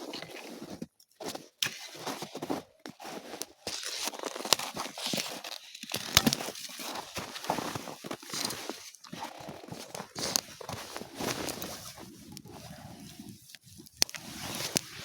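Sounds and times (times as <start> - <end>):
dry branches snapping: 5.4 - 6.6.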